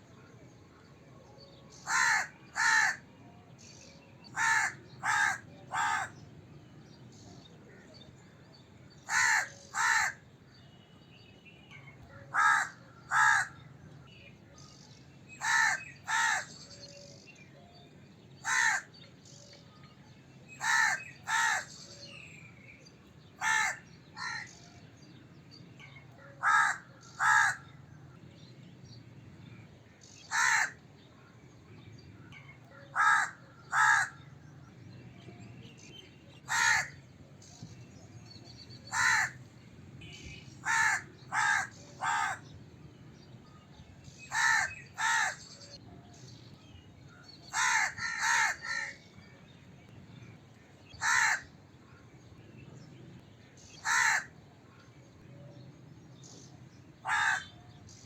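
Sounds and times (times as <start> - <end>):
crow cawing: 1.8 - 3.0, 4.4 - 6.2, 9.0 - 10.2, 12.3 - 13.6, 15.4 - 16.5, 18.4 - 18.9, 20.6 - 21.7, 23.4 - 24.5, 26.4 - 27.7, 30.3 - 30.8, 32.9 - 34.2, 36.5 - 37.0, 38.9 - 39.4, 40.6 - 42.4, 44.3 - 45.4, 47.5 - 49.0, 51.0 - 51.5, 53.8 - 54.3, 57.0 - 57.5.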